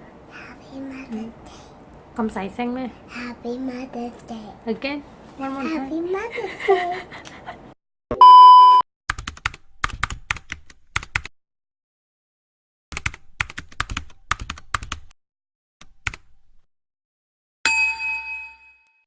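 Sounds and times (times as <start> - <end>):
rapid key clicks: 9.1 - 11.3, 13.0 - 15.1, 15.8 - 16.3.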